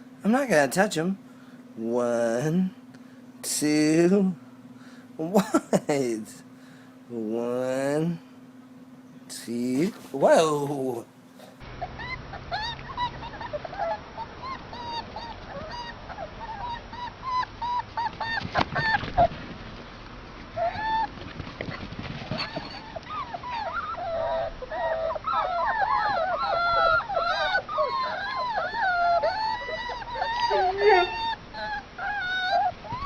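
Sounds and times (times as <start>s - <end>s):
puppies whining and squealing: 9.6s - 19.4s, 20.5s - 33.0s.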